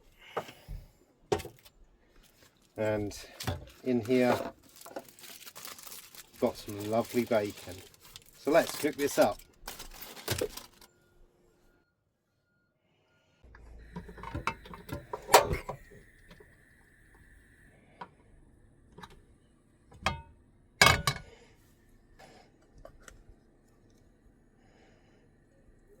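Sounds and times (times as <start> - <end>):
low steady hum: 0.5 - 26.0
pan and utensils clattering: 14.0 - 15.8, 20.8 - 21.3.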